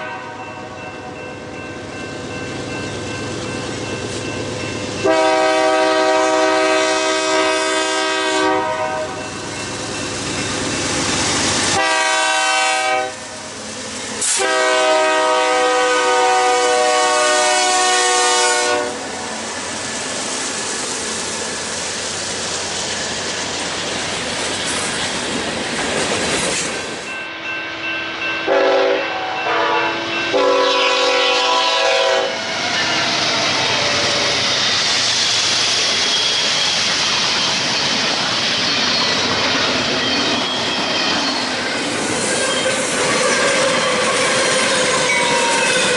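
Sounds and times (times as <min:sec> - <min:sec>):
locomotive air horn: 0:00.0 - 0:00.5, 0:05.0 - 0:09.2, 0:11.7 - 0:13.4, 0:14.2 - 0:19.1, 0:28.4 - 0:32.4, 0:42.4 - 0:45.9
train rumbling past: 0:00.0 - 0:45.9.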